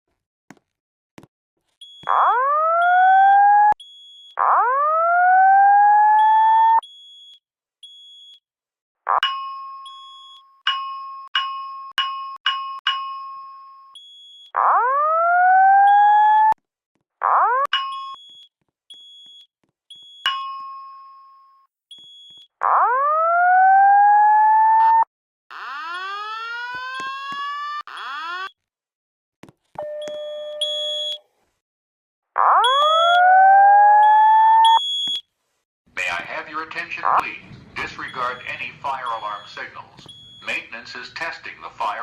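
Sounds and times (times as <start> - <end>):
fire alarm tones: 1.8 - 8.4, 9.6 - 11.5, 13.3 - 16.6, 17.4 - 20.7, 21.9 - 28.6, 29.8 - 31.2, 32.5 - 35.3, 36.1 - 42.0.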